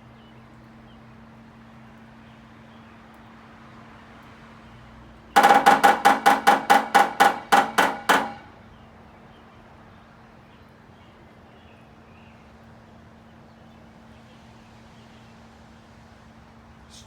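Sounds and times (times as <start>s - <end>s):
woodpecker hammering: 5.4s - 8.6s.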